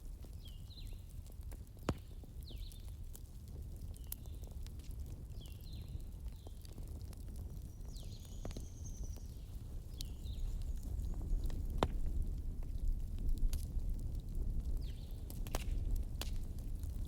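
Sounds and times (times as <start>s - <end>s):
wood fire crackling and popping: 0.0s - 17.0s.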